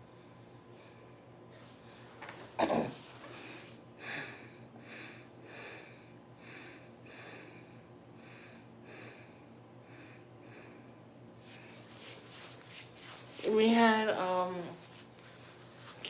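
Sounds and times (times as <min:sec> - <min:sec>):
low electrical hum: 0:00.0 - 0:16.0
soft rhythmic scratching: 0:11.4 - 0:16.0.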